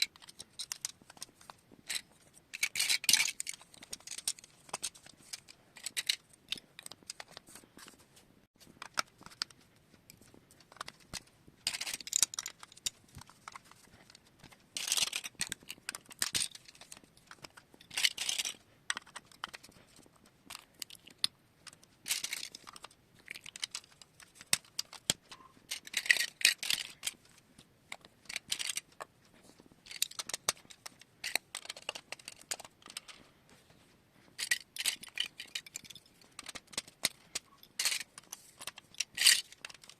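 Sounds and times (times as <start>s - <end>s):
glass marbles rattling on plastic run: 1.9s - 6.2s, 11.7s - 13.3s, 14.8s - 18.6s, 34.4s - 39.9s.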